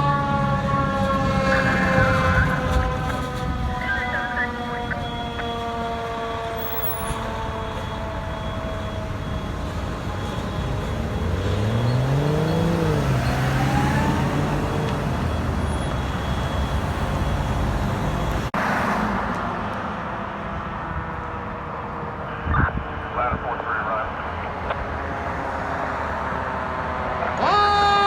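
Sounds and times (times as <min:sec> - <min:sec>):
siren winding down: 0:00.0 - 0:18.5
truck engine revving: 0:00.0 - 0:19.3.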